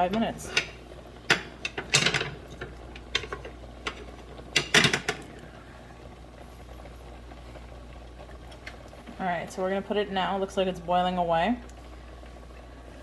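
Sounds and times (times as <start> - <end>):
cookware clicks and knocks: 0.0 - 2.4, 3.1 - 4.0, 4.6 - 5.2
cookware clattering: 0.0 - 5.2.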